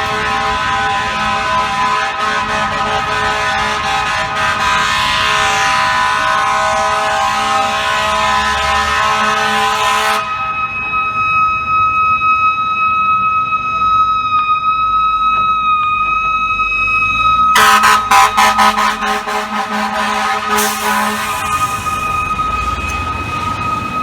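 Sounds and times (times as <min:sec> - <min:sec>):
fire truck air horn blasts: 0:00.0 - 0:11.7, 0:17.5 - 0:24.0
siren steady high pitch: 0:00.0 - 0:24.0.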